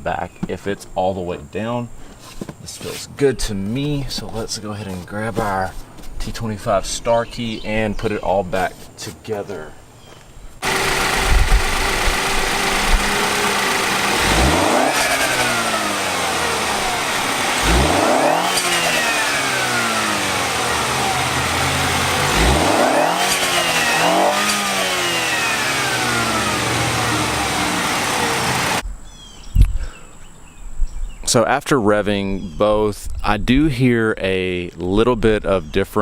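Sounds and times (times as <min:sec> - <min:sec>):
car engine idling and revving: 0:10.6 - 0:28.8.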